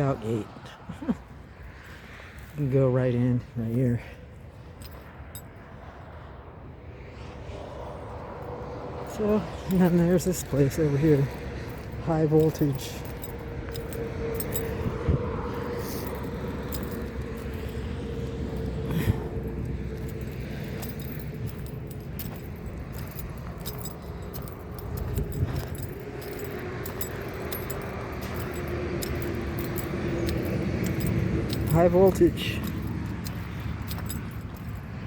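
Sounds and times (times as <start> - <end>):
car driving hum: 0.0 - 35.0
keys jingling: 3.6 - 5.7, 9.0 - 35.0.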